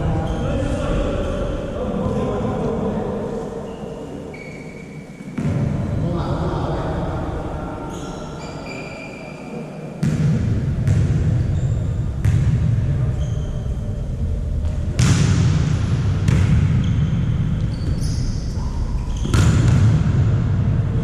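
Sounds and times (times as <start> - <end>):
shoe squeaks: 3.6 - 5.4, 7.9 - 9.5, 11.4 - 12.0, 13.1 - 13.9, 16.8 - 19.5.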